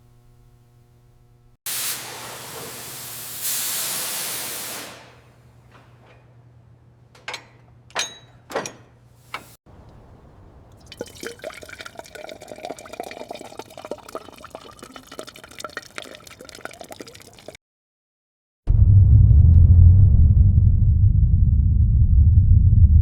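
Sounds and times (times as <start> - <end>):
liquid dripping and splashing: 10.7 - 17.6
liquid pouring with small pops: 10.7 - 17.6.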